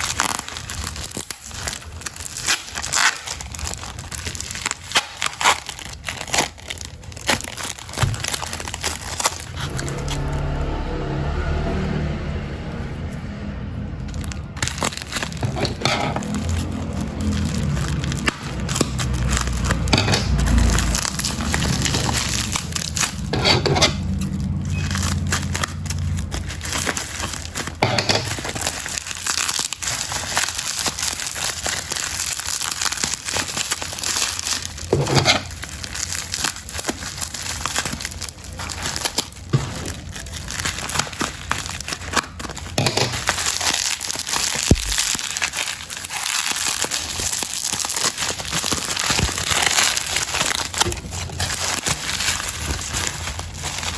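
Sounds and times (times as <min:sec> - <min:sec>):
packaging crumpled by hand: 0:00.0 - 0:10.7, 0:14.0 - 0:53.9
low hum: 0:09.5 - 0:18.6, 0:44.6 - 0:45.2.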